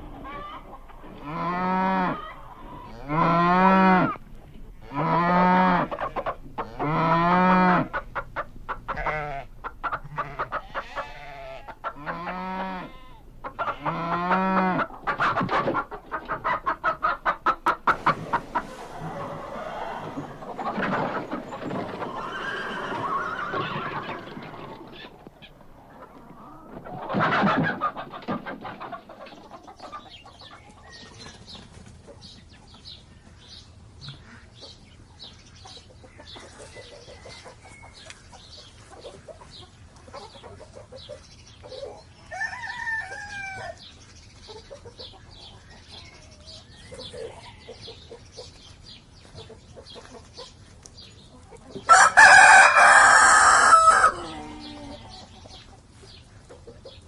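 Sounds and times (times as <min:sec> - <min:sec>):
chickens clucking: 0:00.0 - 0:57.0
loud animal call: 0:17.9 - 0:25.2
rooster crowing: 0:18.6 - 0:20.7, 0:42.3 - 0:43.8, 0:51.9 - 0:54.8.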